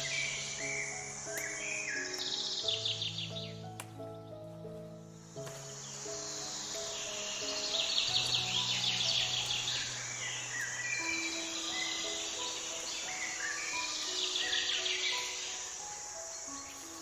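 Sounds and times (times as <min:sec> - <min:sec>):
bird-like chirps: 0:00.0 - 0:17.0
high insect chirring: 0:00.0 - 0:17.0
slow background music: 0:00.0 - 0:17.0.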